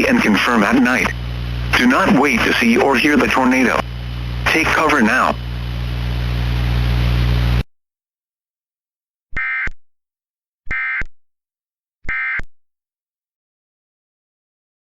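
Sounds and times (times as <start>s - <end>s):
hiss with low hum: 0.0s - 7.6s.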